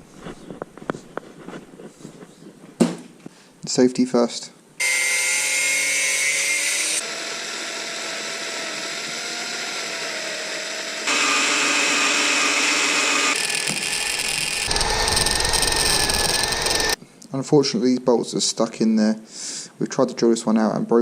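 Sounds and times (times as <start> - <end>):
power drill whining: 6.9 - 17.0.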